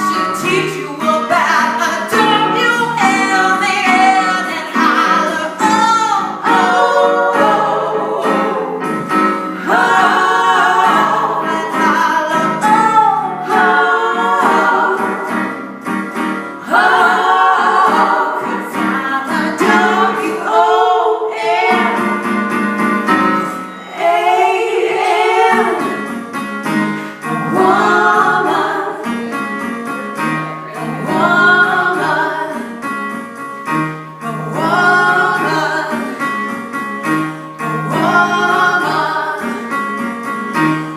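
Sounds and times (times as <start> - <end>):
women singing together: 0.0 - 15.7, 16.6 - 22.3, 23.4 - 26.2, 27.2 - 29.5, 30.6 - 32.8, 34.2 - 36.4, 37.6 - 39.8
guitar accompaniment: 0.0 - 40.9.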